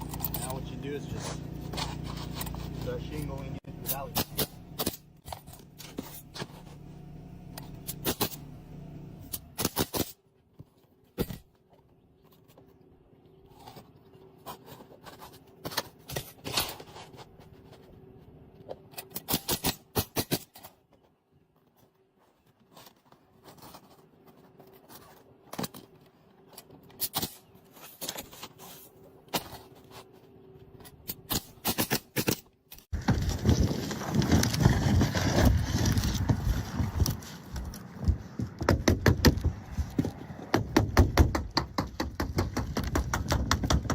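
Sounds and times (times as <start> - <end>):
low hum: 0.0 - 9.6
roof shingles clicking and knocking: 30.8 - 43.9.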